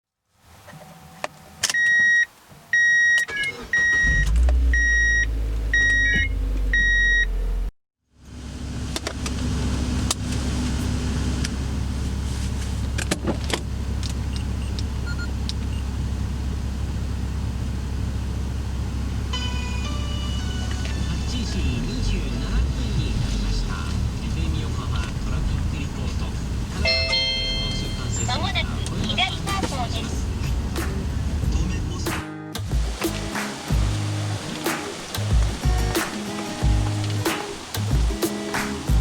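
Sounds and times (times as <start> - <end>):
road noise of car driving: 0.3 - 39.0
car engine rumble: 0.4 - 39.0
car warning chime beeping: 1.7 - 7.4, 14.3 - 15.8, 19.3 - 21.6, 26.8 - 30.6.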